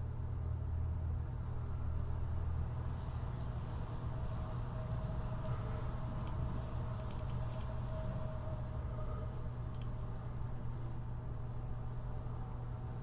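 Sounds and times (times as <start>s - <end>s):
steady low hum: 0.0s - 13.0s
computer keyboard keys tapping: 7.0s - 7.7s.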